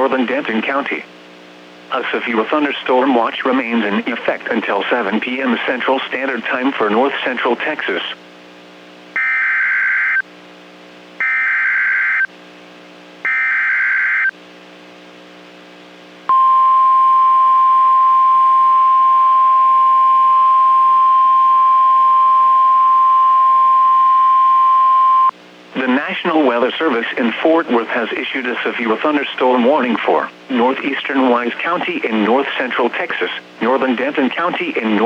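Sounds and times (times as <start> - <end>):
single-pitch warning alarm tone: 9.2 - 10.2, 11.2 - 12.3, 13.2 - 14.3, 16.3 - 25.3.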